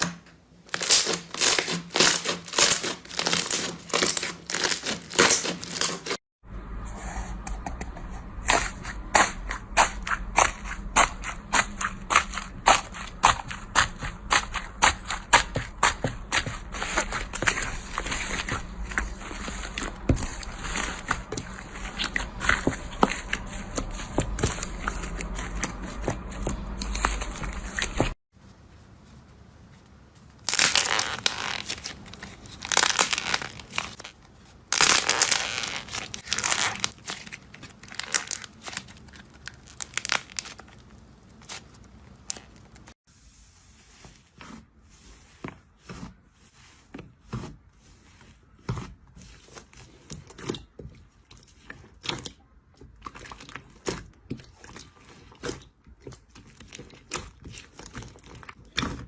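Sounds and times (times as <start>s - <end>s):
slime crackling and popping: 30.4s - 42.9s.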